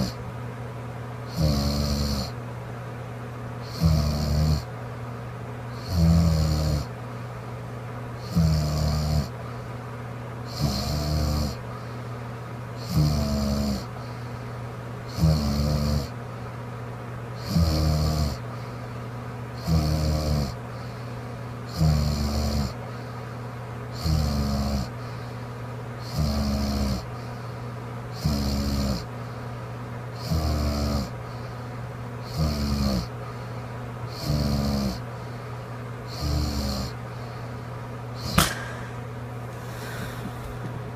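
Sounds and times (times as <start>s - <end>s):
steady low hum: 0.0s - 40.9s
woman snoring: 1.3s - 2.3s, 3.7s - 4.7s, 5.8s - 6.9s, 8.2s - 9.3s, 10.5s - 11.6s, 12.8s - 13.9s, 15.1s - 16.1s, 17.4s - 18.4s, 19.6s - 20.6s, 21.7s - 22.8s, 24.0s - 24.9s, 26.0s - 27.1s, 28.2s - 29.1s, 30.2s - 31.2s, 32.3s - 33.1s, 34.1s - 35.0s, 36.1s - 37.0s.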